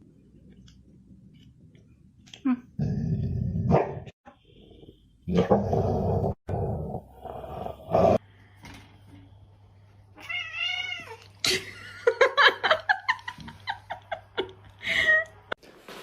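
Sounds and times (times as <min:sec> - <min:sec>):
cat yowling and crying: 0:10.2 - 0:11.2.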